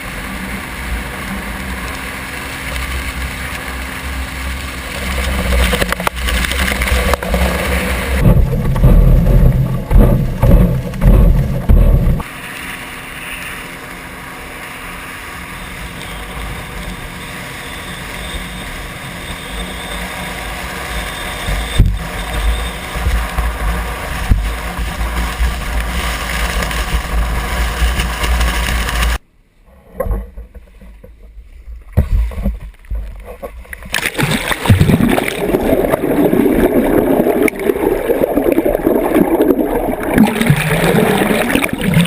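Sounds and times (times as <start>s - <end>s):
boat engine rumble: 0.0s - 42.0s
wind on microphone: 4.9s - 12.3s, 21.5s - 29.2s.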